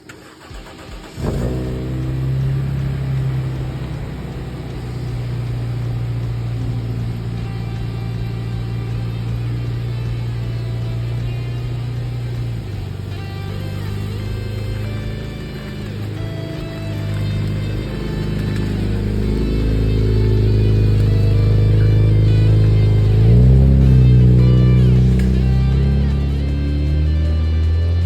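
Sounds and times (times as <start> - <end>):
car driving with low drone: 0.0 - 28.0.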